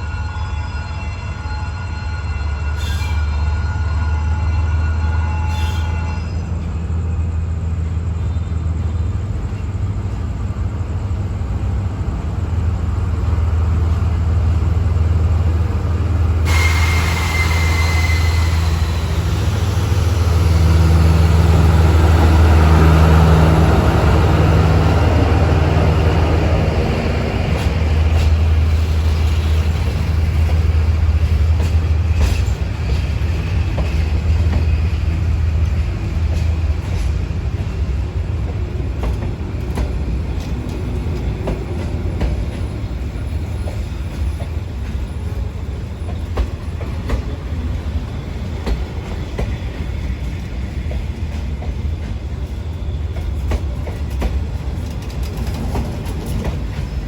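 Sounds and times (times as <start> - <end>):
high squeal: 0.0 - 6.8, 16.3 - 26.4
train rumbling: 0.0 - 57.0.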